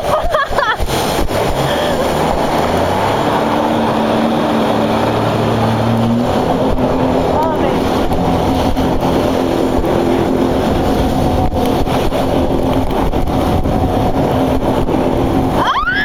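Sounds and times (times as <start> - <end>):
jet ski engine drone: 0.0 - 16.0
wind and water noise: 0.0 - 16.0
person crying out: 15.6 - 16.0.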